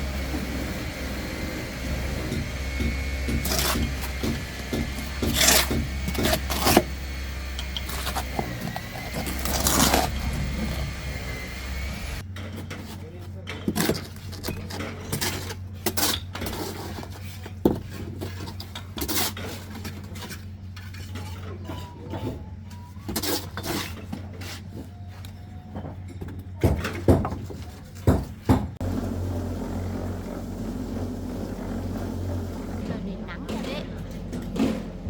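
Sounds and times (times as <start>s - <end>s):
steady low hum: 0.0s - 12.2s, 28.8s - 35.0s
metal tools clinking and scraping: 7.5s - 10.8s.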